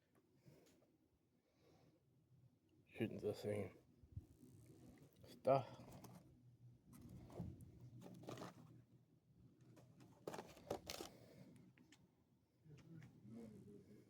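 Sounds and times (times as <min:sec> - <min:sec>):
faint handling rustles and clicks: 0:05.7 - 0:06.3, 0:06.9 - 0:08.8, 0:09.6 - 0:12.1.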